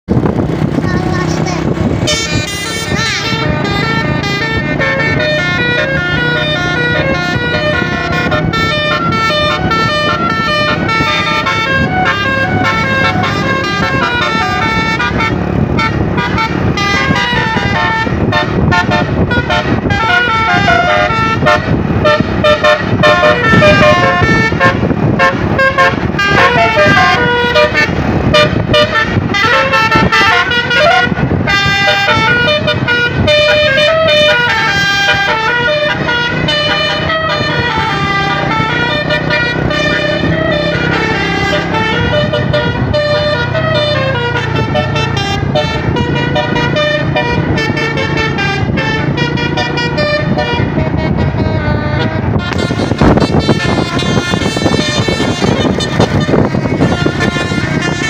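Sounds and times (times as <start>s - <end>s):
musical horn blasting melodic notes: 1.9s - 58.0s.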